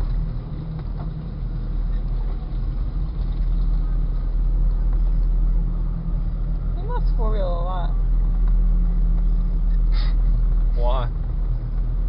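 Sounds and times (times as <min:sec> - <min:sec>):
car engine droning from inside: 0:00.0 - 0:12.0.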